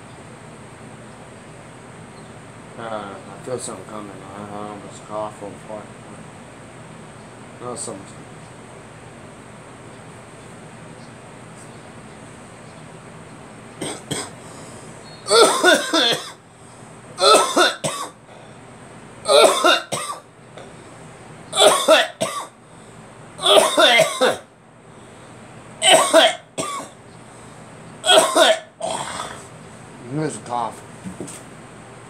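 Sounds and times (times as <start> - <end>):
person coughing: 13.8 - 14.3, 15.3 - 16.4, 17.2 - 18.2, 19.3 - 20.2, 21.6 - 22.5, 23.4 - 24.5, 25.8 - 27.0, 28.0 - 29.4.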